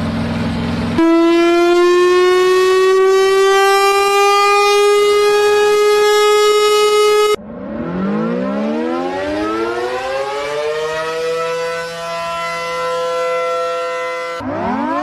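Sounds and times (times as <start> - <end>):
siren winding up and wailing: 1.0 - 15.0.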